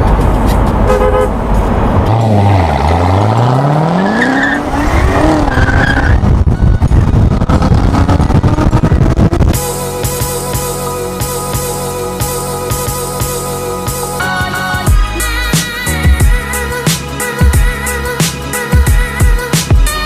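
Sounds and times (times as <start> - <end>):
car engine accelerating hard: 0.0 - 9.6.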